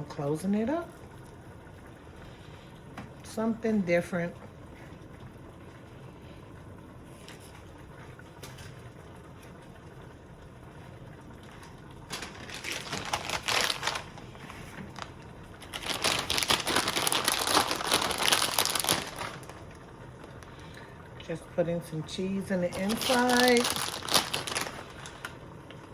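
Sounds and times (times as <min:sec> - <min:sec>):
food packaging crinkling: 0:11.4 - 0:20.7, 0:22.7 - 0:25.4.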